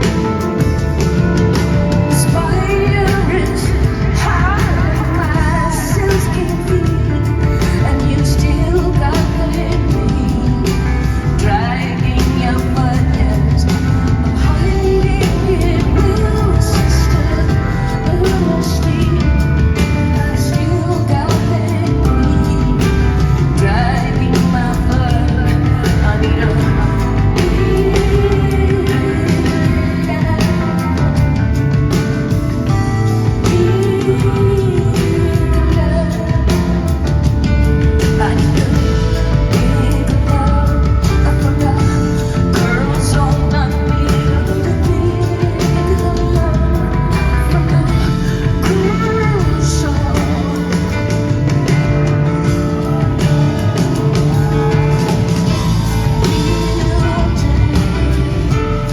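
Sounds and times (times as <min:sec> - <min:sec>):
live rock band playing: 0:00.0 - 0:58.9
steady drum beat: 0:00.0 - 0:58.9
woman singing: 0:00.0 - 0:58.9
drum strikes: 0:45.6 - 0:58.9.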